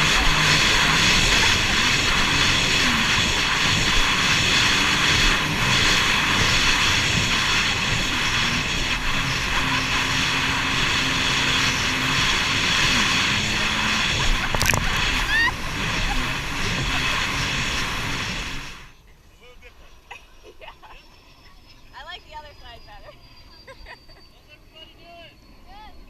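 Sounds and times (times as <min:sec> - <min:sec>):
rush of wind and water: 0:00.0 - 0:18.8
jet ski engine running: 0:00.0 - 0:19.1.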